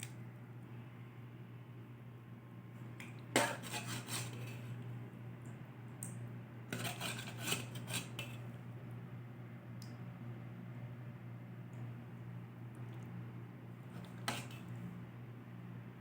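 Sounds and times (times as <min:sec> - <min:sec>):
utensil scraping pot: 0:03.3 - 0:04.8, 0:06.7 - 0:08.5, 0:13.9 - 0:14.8.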